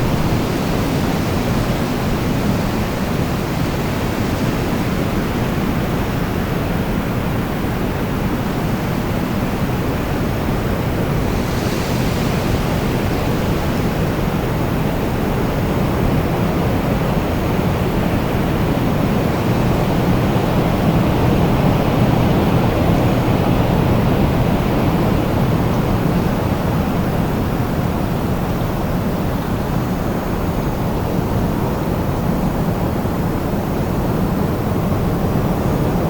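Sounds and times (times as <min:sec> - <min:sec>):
wind blowing: 0:00.0 - 0:05.6, 0:10.2 - 0:16.4.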